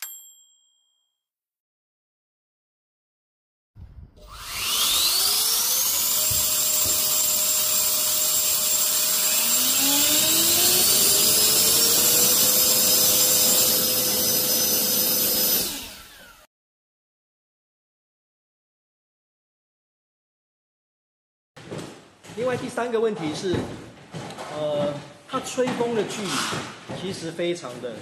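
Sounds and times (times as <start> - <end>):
electric blower whine: 4.2 - 16.5.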